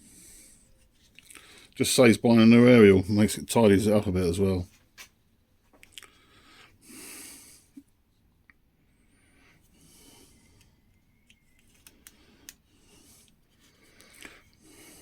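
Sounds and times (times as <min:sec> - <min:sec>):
faint breathing: 0:00.0 - 0:01.8, 0:06.0 - 0:07.9, 0:08.8 - 0:15.0
small clicks and taps: 0:10.6 - 0:12.6.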